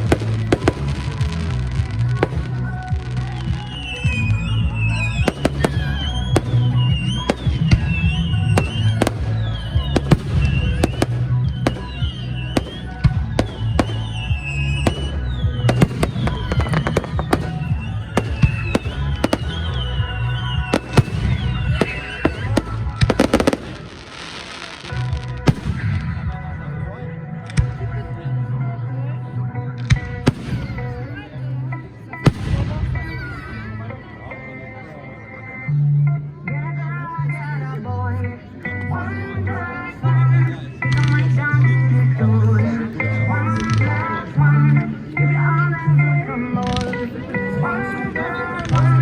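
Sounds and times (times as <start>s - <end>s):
fireworks bangs and booms: 0.0s - 26.4s, 29.8s - 31.0s, 32.3s - 33.4s
loud music: 0.0s - 49.0s.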